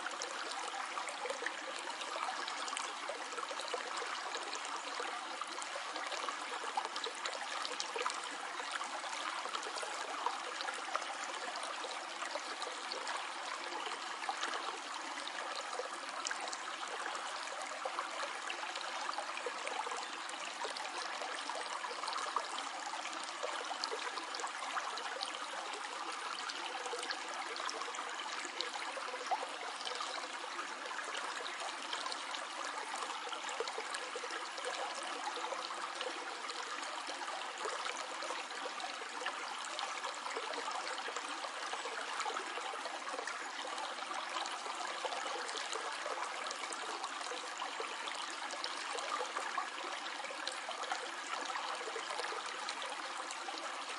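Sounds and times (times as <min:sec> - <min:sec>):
stream flowing over stones: 0:00.0 - 0:53.9.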